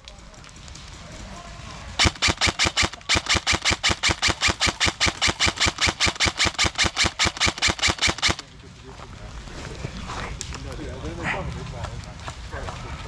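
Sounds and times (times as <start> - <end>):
airsoft gun firing: 2.0 - 8.4.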